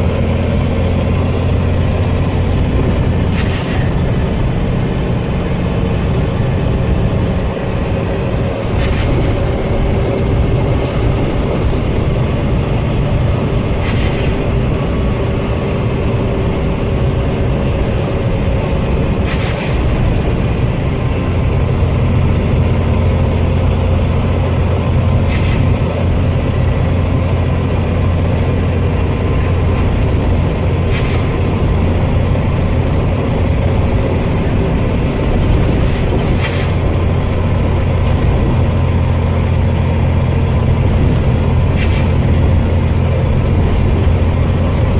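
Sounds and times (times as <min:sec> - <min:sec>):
bus engine droning: 0:00.0 - 0:44.9
sharp hiss of air: 0:03.3 - 0:04.0, 0:13.8 - 0:14.4, 0:30.9 - 0:31.4, 0:41.8 - 0:42.2.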